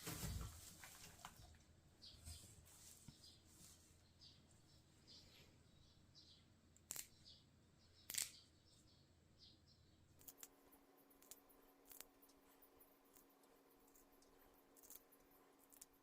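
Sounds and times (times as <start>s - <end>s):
faint steady hum: 0.0s - 16.0s
faint bird chirps: 1.2s - 16.0s
sharp snips: 6.8s - 7.2s, 8.1s - 8.5s.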